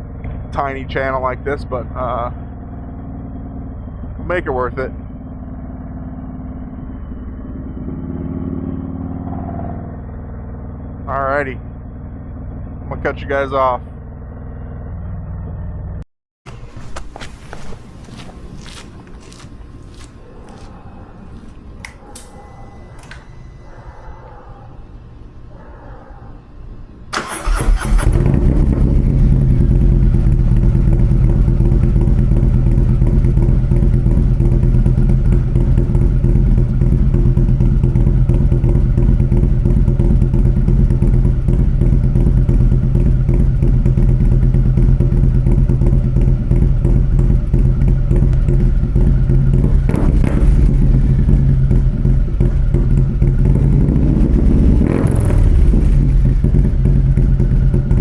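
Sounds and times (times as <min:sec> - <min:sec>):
motorcycle exhaust note: 0:00.0 - 0:20.1, 0:27.1 - 0:58.0.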